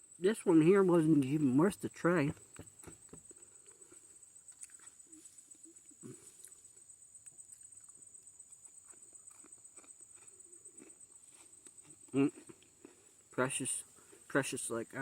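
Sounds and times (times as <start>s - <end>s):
high-pitched insect trill: 0.0s - 15.0s.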